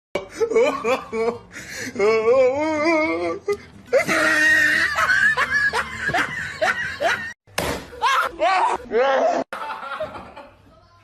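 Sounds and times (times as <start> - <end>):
person laughing hard: 0.2 - 1.5, 3.9 - 7.4.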